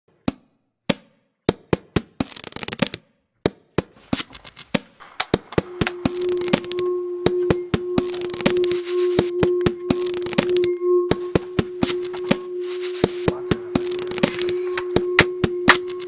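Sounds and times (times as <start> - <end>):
steady held tone: 4.0 - 16.0.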